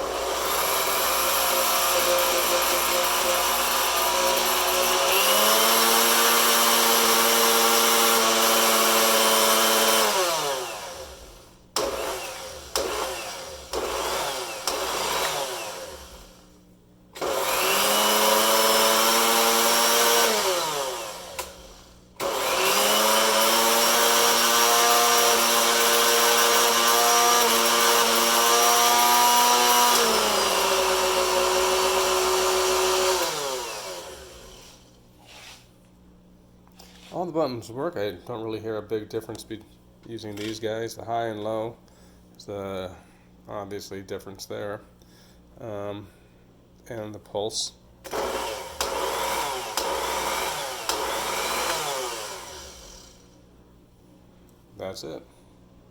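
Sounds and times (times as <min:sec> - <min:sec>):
blender motor whining: 0:00.0 - 0:16.5, 0:17.2 - 0:34.9, 0:48.1 - 0:53.4.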